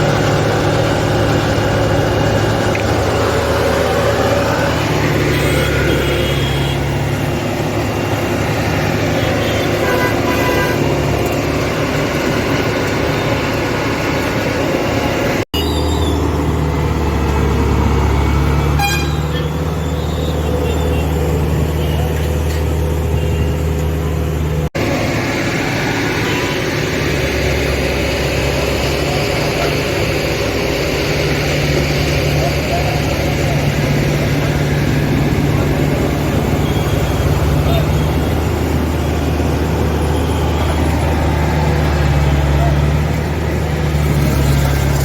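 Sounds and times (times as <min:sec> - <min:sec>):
heavy diesel engines running: 0:00.0 - 0:45.0
vehicle horns tooting: 0:05.2 - 0:07.1, 0:09.0 - 0:11.3, 0:18.7 - 0:22.4, 0:36.3 - 0:38.8.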